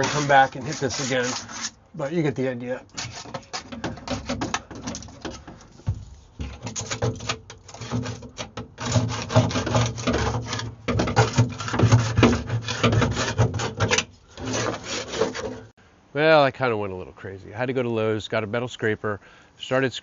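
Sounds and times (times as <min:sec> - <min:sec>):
plastic scraper scraping paint: 0:00.0 - 0:01.7, 0:02.9 - 0:05.7, 0:06.4 - 0:15.7.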